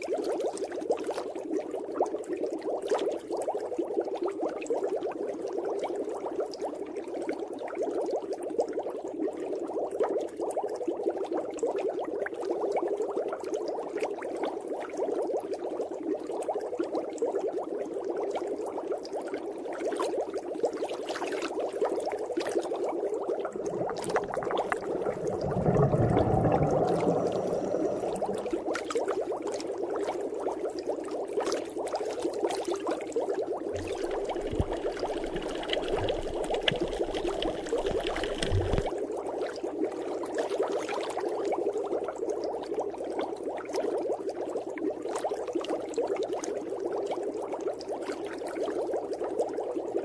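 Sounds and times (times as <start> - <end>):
water bubbling underwater: 21.8 - 39.9
low rumble: 23.5 - 28.8.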